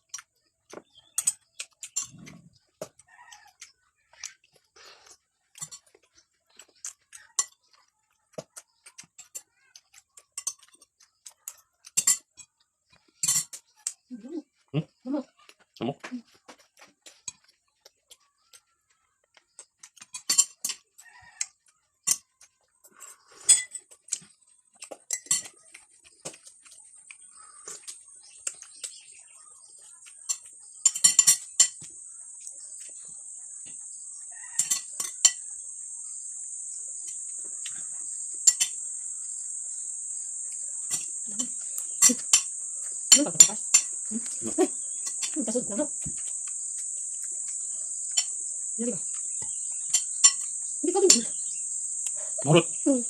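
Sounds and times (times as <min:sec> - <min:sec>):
cutlery clinking on a plate: 0:10.3 - 0:11.0, 0:11.9 - 0:12.5, 0:13.2 - 0:13.6, 0:19.9 - 0:21.2, 0:23.0 - 0:24.2, 0:24.8 - 0:25.6, 0:30.2 - 0:31.9, 0:34.4 - 0:35.5, 0:38.4 - 0:38.8, 0:49.4 - 0:50.5
high-pitched insect drone: 0:30.0 - 0:53.0
rooster crowing: 0:34.2 - 0:34.9.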